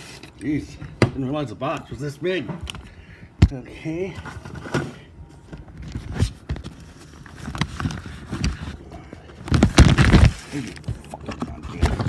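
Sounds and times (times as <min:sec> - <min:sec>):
paper wrapping rustling: 0:05.6 - 0:12.0.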